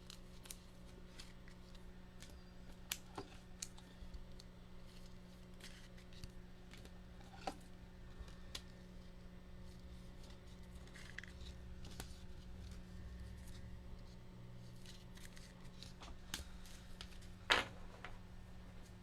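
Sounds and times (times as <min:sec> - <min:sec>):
cards and plastic clicking: 0:14.7 - 0:17.3.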